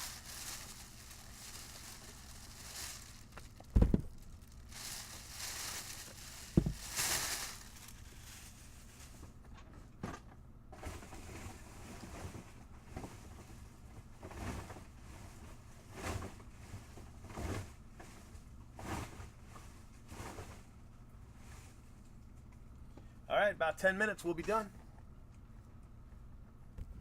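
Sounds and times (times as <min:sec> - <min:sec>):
trading card packs rustling: 0:00.0 - 0:09.2
low steady hum: 0:00.0 - 0:15.9.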